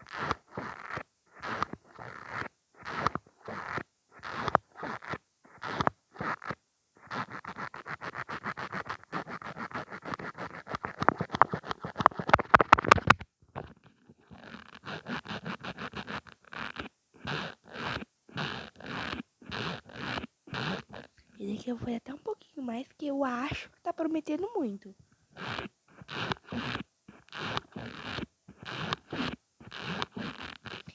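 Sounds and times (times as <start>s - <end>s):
mascara wand scratchy strokes: 7.1s - 12.4s, 14.4s - 24.6s.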